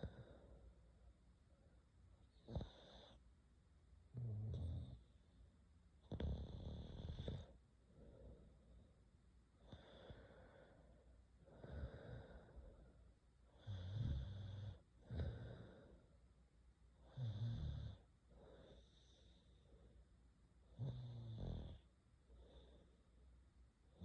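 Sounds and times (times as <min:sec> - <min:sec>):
girl snoring: 0:02.5 - 0:03.2, 0:04.2 - 0:05.0, 0:06.1 - 0:07.6, 0:13.6 - 0:15.9, 0:17.1 - 0:18.0, 0:20.8 - 0:21.8.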